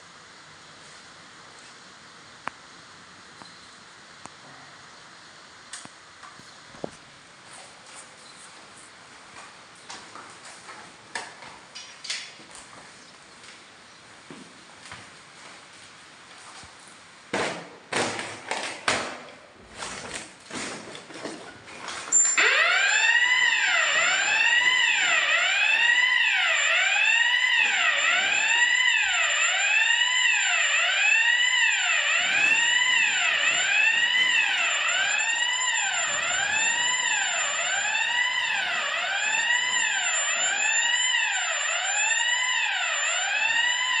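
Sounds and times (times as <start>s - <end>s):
thin high whistle: 22.1s - 22.4s
fire alarm wailing tone: 22.1s - 44.0s.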